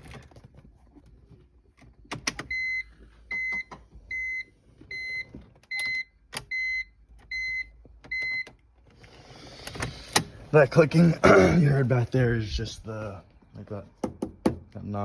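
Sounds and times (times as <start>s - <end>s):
car warning chime beeping: 2.5s - 8.6s.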